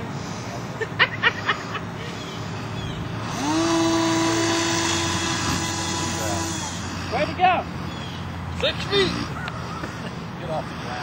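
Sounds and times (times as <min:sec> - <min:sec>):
model airplane motor whine: 0:02.9 - 0:07.4.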